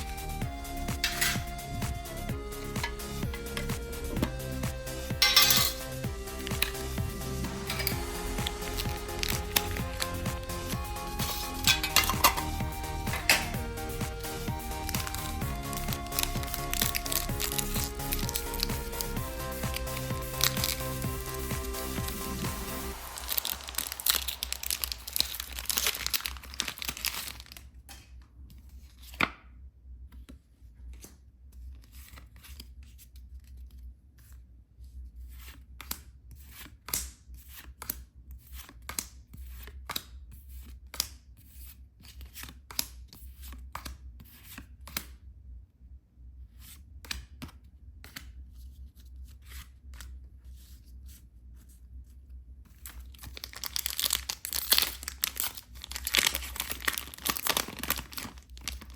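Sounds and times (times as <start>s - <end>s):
packaging tearing and crinkling: 23.0s - 27.7s, 52.8s - 58.9s
cards clicking and snapping: 35.4s - 41.2s, 42.0s - 45.2s, 47.0s - 48.4s, 52.7s - 58.9s.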